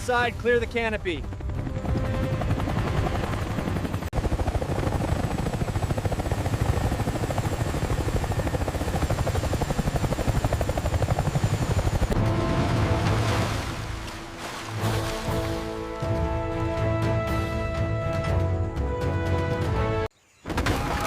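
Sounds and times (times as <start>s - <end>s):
helicopter rotor beating: 0.0s - 14.0s.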